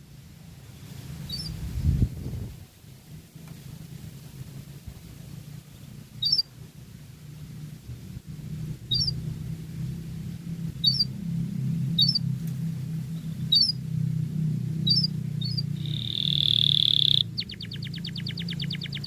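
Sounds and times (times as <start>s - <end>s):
steady low hum: 0.0s - 19.0s
canary chirping: 1.3s - 1.6s, 6.2s - 6.5s, 8.9s - 9.2s, 10.8s - 11.2s, 11.9s - 12.3s, 13.3s - 13.8s, 14.8s - 19.0s.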